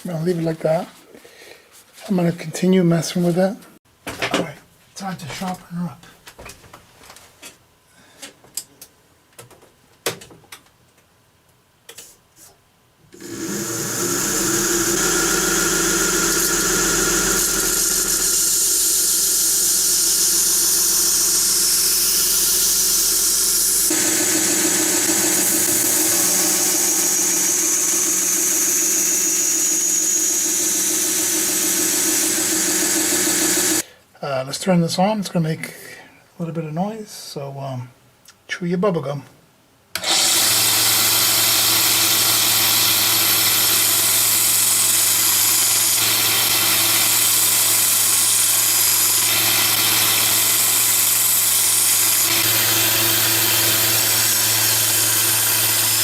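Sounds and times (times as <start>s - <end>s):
powered sharpener hissing and squealing: 13.2s - 33.8s, 40.0s - 56.0s.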